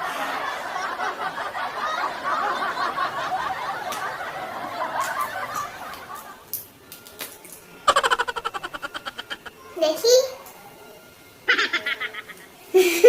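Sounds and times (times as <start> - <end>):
laughter and giggling: 0.0 - 6.6, 7.9 - 9.6, 11.5 - 13.0.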